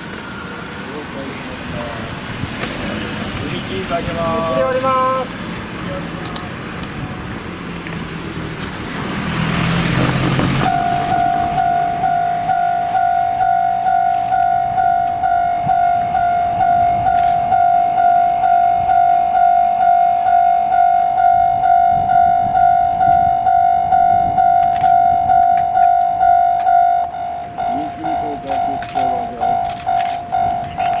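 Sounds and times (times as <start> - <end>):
electronic crossing bell: 10.6 - 31.0.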